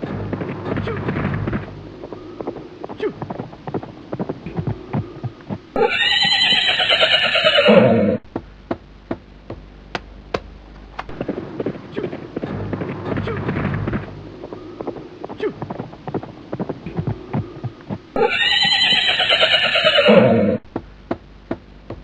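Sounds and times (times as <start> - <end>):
horse hoofbeats: 0.0 - 22.0
horse neighing loudly: 5.8 - 8.2, 18.2 - 20.6.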